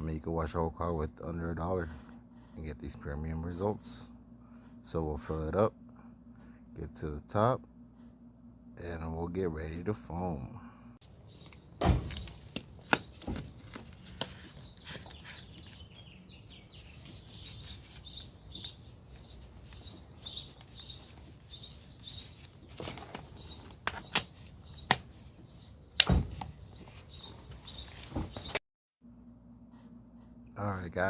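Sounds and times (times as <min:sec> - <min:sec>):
bird chirping: 0:11.0 - 0:28.6
sharp knocks and clicks: 0:25.9 - 0:27.5.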